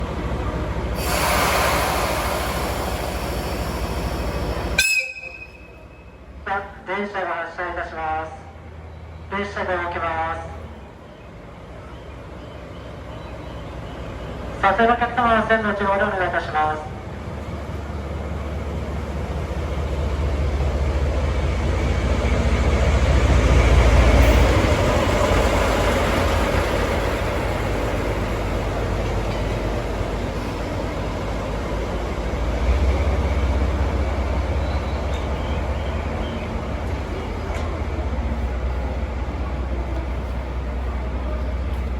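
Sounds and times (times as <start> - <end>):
locomotive diesel engine rumbling: 0.0 - 41.9.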